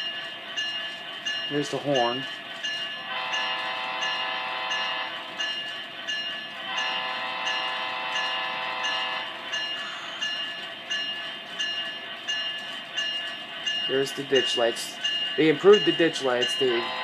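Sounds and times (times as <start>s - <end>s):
locomotive bell ringing: 0.0s - 17.0s
locomotive air horn: 3.1s - 5.1s, 6.7s - 9.3s.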